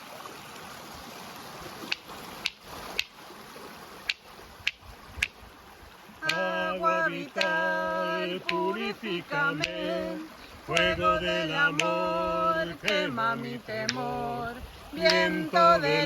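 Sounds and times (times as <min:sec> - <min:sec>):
running water: 0:00.0 - 0:16.0
person singing long notes: 0:06.2 - 0:16.0.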